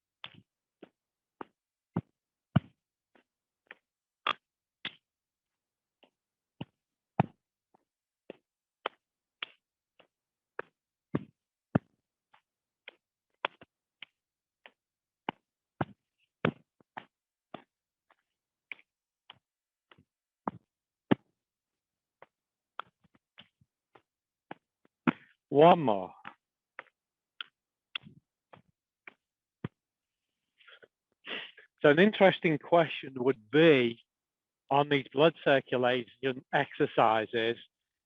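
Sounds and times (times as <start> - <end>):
hand patting arm: 6.0 - 21.4, 22.2 - 25.4.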